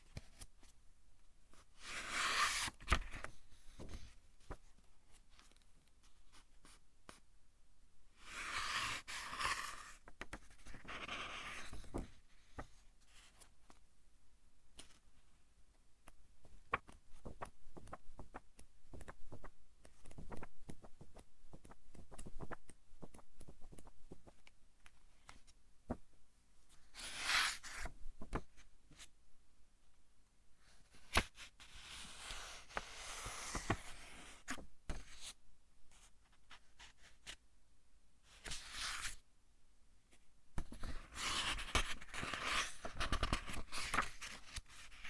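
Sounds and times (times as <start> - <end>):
book pages turning: 2.0 - 4.0, 8.3 - 12.7, 38.4 - 39.2, 40.6 - 45.0.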